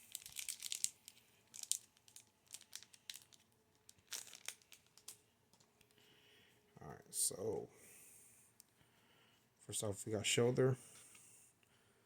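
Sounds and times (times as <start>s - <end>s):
foil wrapper crinkling: 0.0s - 5.2s.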